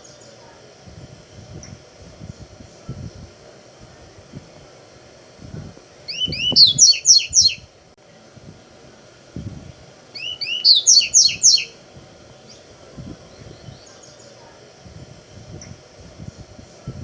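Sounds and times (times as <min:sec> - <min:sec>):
bird singing chirped notes: 0:06.1 - 0:07.6, 0:10.2 - 0:11.8.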